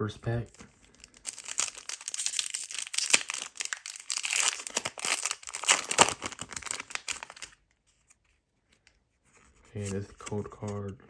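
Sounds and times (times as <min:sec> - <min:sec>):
foil wrapper tearing and crinkling: 0:00.5 - 0:07.6.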